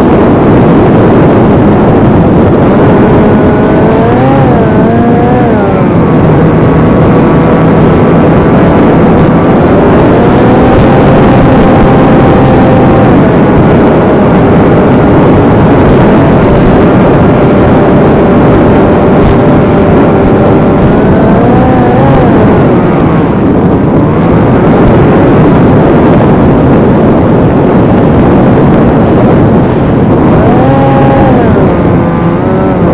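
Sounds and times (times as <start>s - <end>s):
electric motor and propeller whine: 0.0s - 32.9s.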